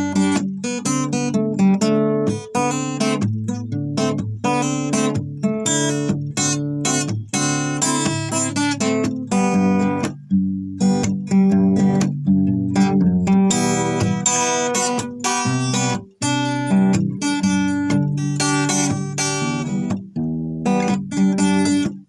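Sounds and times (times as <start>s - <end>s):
acoustic guitar strumming chords: 0.0s - 22.0s.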